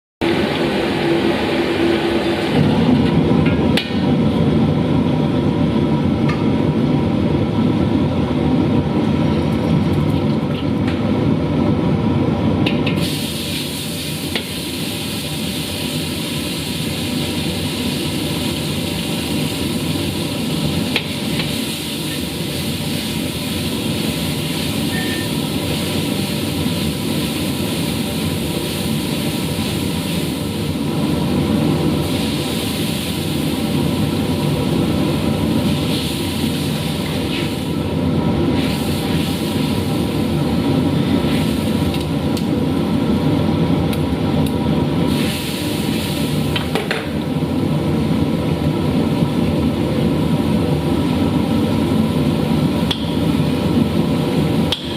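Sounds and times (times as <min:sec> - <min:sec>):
food sizzling in a pan: 0:13.0 - 0:31.0, 0:32.0 - 0:34.5, 0:35.5 - 0:37.8, 0:38.5 - 0:41.9, 0:45.1 - 0:46.8.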